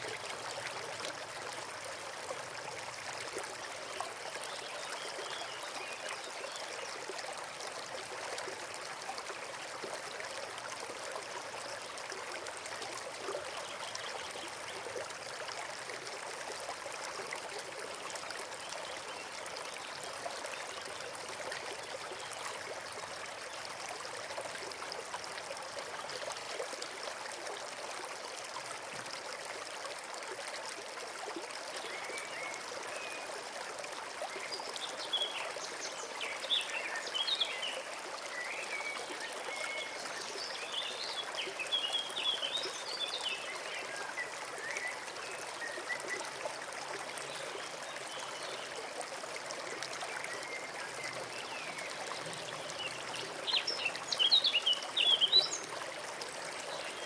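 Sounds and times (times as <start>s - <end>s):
stream trickling: 0.0s - 57.0s
songbird singing: 50.3s - 55.7s.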